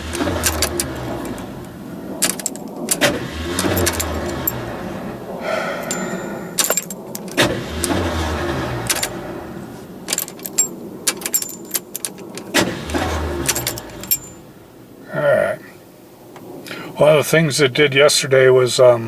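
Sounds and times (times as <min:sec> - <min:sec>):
engine cranking by starter: 0:00.0 - 0:04.9, 0:05.8 - 0:14.4.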